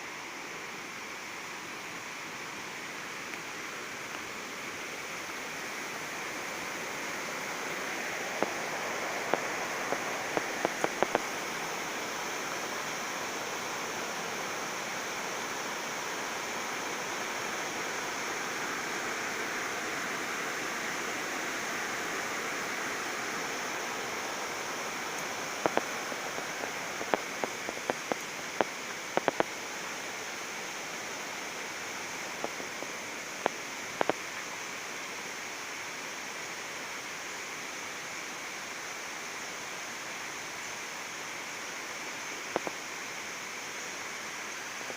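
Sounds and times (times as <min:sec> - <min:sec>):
waterfall roaring: 0:00.0 - 0:44.9
sharp clicks: 0:09.3 - 0:11.3, 0:25.6 - 0:29.5.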